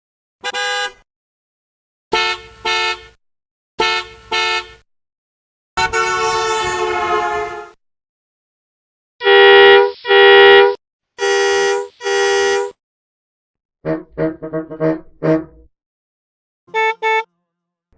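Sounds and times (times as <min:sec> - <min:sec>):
vehicle horn honks: 0:00.4 - 0:01.0, 0:03.8 - 0:04.7, 0:05.8 - 0:07.8, 0:09.2 - 0:12.8, 0:16.7 - 0:17.3.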